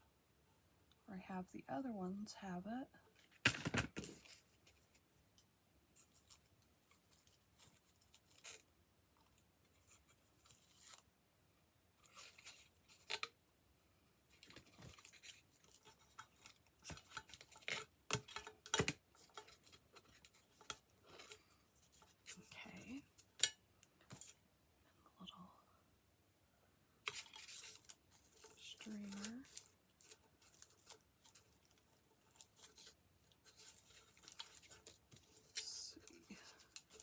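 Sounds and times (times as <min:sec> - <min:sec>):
craft materials rustling: 0:27.1 - 0:37.0.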